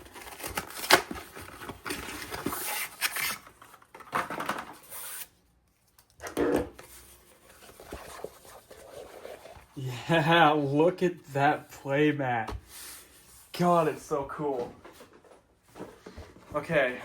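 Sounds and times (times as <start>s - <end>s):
packaging rustling and scraping: 0.0s - 5.4s, 6.7s - 9.8s.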